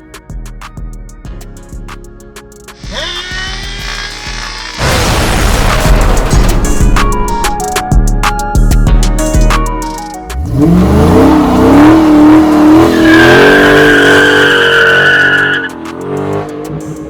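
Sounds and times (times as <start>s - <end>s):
tires squealing: 2.8s - 4.8s, 10.6s - 16.4s
car engine revving: 10.4s - 17.0s.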